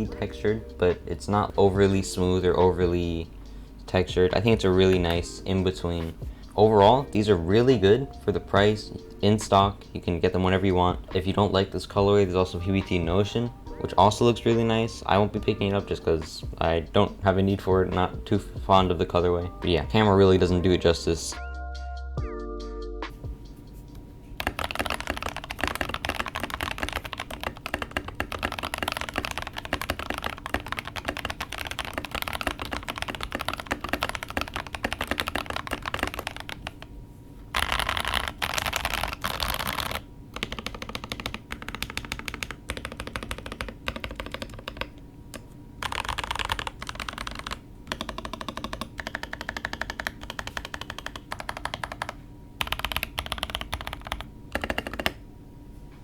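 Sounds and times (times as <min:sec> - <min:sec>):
mechanical keyboard typing: 0:24.4 - 0:36.9, 0:37.6 - 0:55.2.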